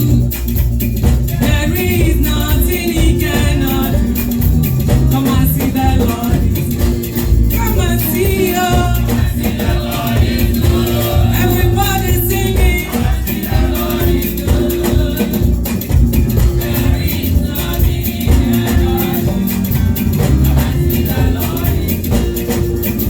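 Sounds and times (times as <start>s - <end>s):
voices singing along: 0.0s - 0.7s, 1.3s - 23.0s
gospel church band music: 0.0s - 23.0s.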